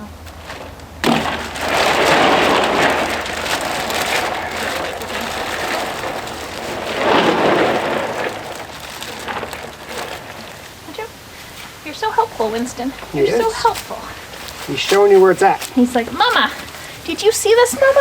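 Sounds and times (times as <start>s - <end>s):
running water splashing: 1.0s - 12.6s.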